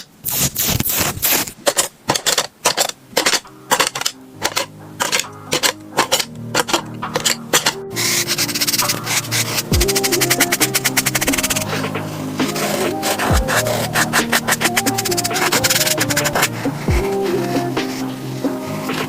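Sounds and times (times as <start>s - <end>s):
music with steady notes: 3.3s - 19.0s
fast beat background music: 3.5s - 19.0s
drawing tool scratching paper: 3.9s - 16.6s.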